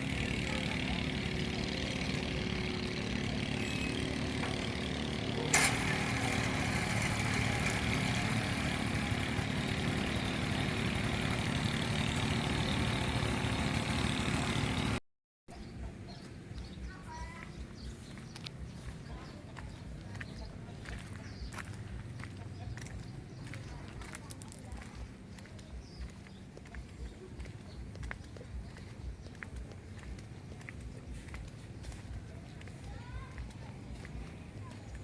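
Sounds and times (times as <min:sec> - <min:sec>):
engine rumbling: 0:00.0 - 0:35.0.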